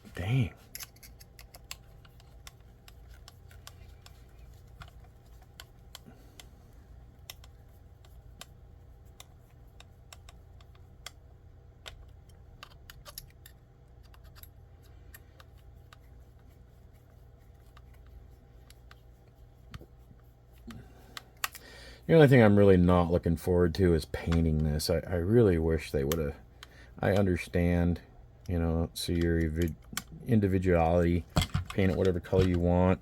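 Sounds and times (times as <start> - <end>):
faint low hum: 0.0 - 33.0
small parts and tools clicking: 0.6 - 11.2, 11.8 - 16.5, 20.5 - 21.7.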